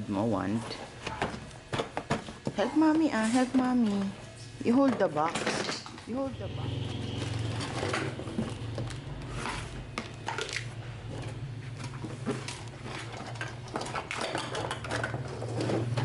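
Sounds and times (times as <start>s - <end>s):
box and toys clattering: 7.2s - 16.0s.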